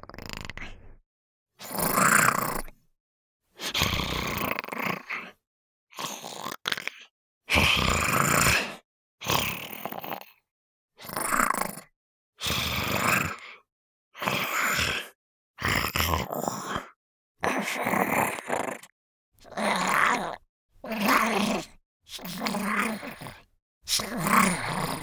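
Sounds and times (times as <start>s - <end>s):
small monster growling snarls: 0.0s - 1.0s, 1.6s - 2.8s, 3.6s - 5.4s, 6.0s - 10.4s, 11.0s - 25.0s.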